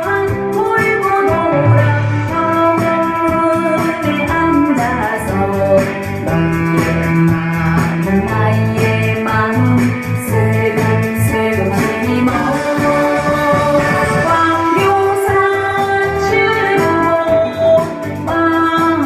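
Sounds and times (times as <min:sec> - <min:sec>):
instrumental backing with bass line: 0:00.0 - 0:19.0
person singing: 0:00.0 - 0:19.0.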